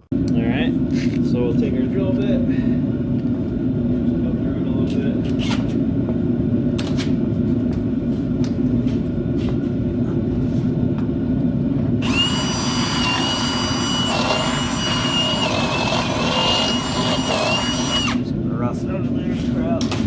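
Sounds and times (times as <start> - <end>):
steady low hum: 0.0 - 20.0
drill motor whining: 12.0 - 18.3.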